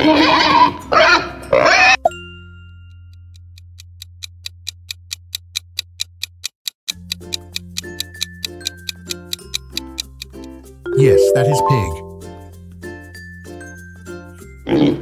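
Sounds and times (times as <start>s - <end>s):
clock-like ticking: 3.1s - 10.6s
musical chords: 10.9s - 12.4s
pig grunting and oinking: 14.7s - 15.0s.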